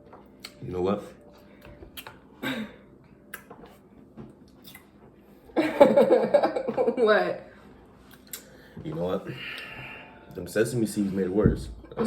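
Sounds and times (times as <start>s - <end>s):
mouth clicks and smacks: 4.5s - 4.9s.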